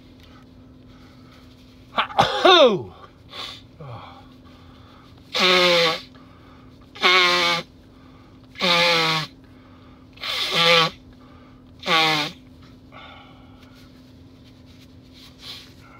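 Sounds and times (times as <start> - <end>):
person sneezing: 1.9 - 4.2.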